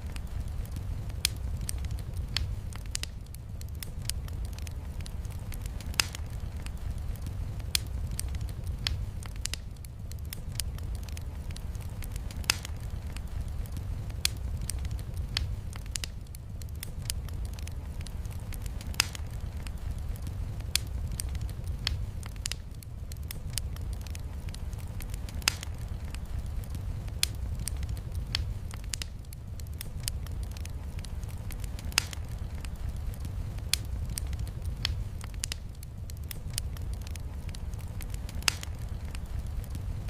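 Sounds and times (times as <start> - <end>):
wood fire crackling and popping: 0.0 - 40.0.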